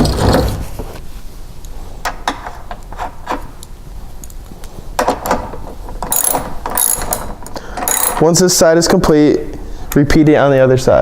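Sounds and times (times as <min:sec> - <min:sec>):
clicks and knocks of metal parts: 0:05.0 - 0:08.3.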